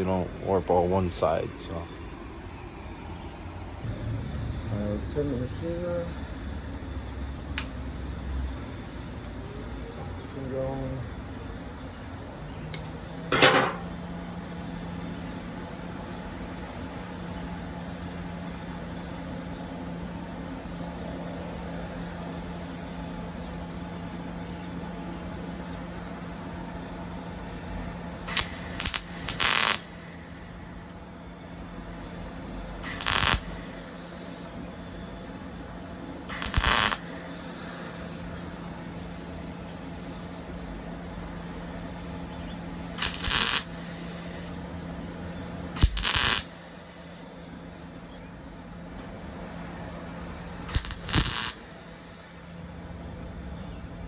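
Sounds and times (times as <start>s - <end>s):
welding machine humming: 7.6s - 20.7s, 23.1s - 31.0s, 32.8s - 34.6s, 36.2s - 44.6s, 45.7s - 47.3s, 50.6s - 52.4s
crackling tack welds: 12.6s - 14.1s, 28.2s - 30.9s, 32.8s - 34.5s, 36.3s - 38.0s, 43.0s - 44.5s, 45.8s - 47.3s, 50.7s - 52.4s.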